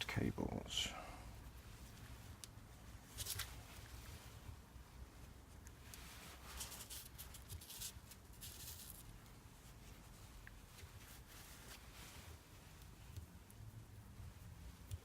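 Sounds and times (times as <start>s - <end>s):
low room hum: 0.0s - 15.0s
fingers scratching copper wire: 5.9s - 9.1s.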